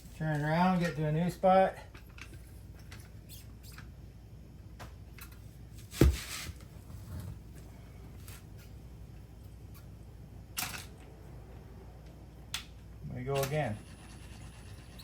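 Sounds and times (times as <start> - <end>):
heavy thump: 6.0 - 6.3.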